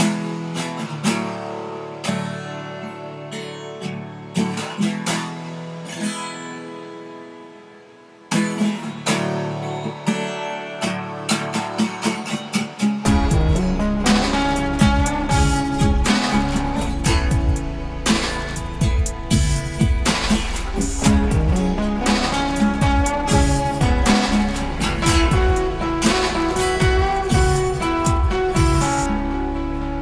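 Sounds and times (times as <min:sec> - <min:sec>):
acoustic guitar picked and strummed: 0:00.0 - 0:30.0
deep bass: 0:13.1 - 0:30.0.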